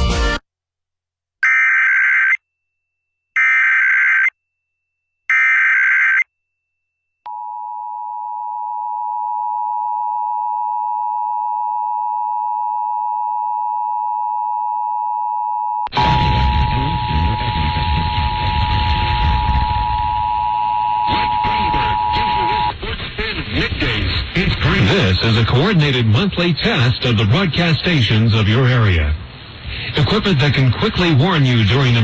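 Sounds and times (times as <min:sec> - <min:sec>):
two-tone attention signal: 0:15.8 - 0:22.7
loud radio static: 0:15.9 - 0:20.1, 0:20.9 - 0:32.0
screechy data bursts: 0:16.0 - 0:20.2, 0:21.0 - 0:22.8.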